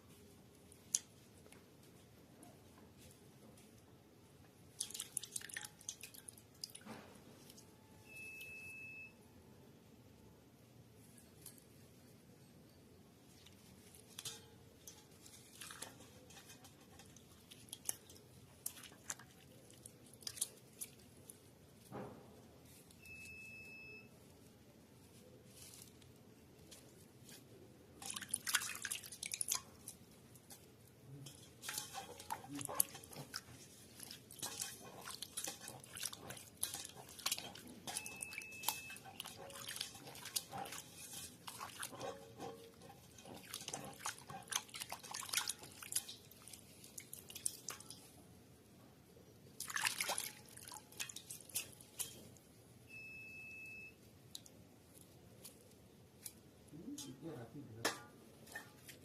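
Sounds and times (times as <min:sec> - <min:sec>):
water dripping and splashing: 0:04.7 - 0:07.6, 0:13.8 - 0:21.8, 0:28.0 - 0:48.2, 0:49.6 - 0:52.2
short steady beeps: 0:07.8 - 0:09.2, 0:23.0 - 0:24.2, 0:38.0 - 0:39.0, 0:52.9 - 0:54.0.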